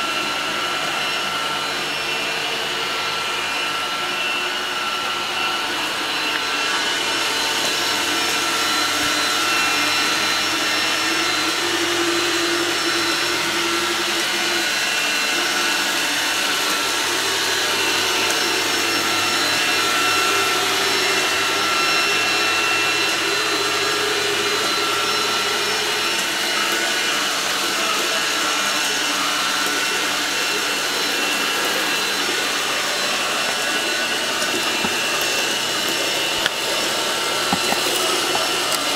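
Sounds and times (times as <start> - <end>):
robot vacuum cleaner running: 0.0 - 38.9.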